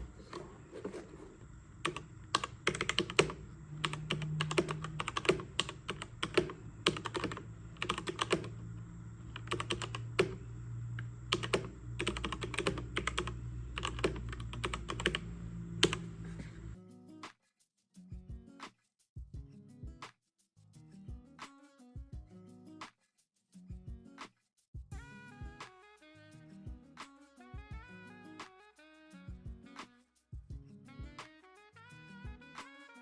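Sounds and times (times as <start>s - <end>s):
steady low hum: 0.0s - 16.8s
mechanical keyboard key clacks: 1.9s - 8.6s, 9.4s - 10.4s, 11.3s - 16.1s.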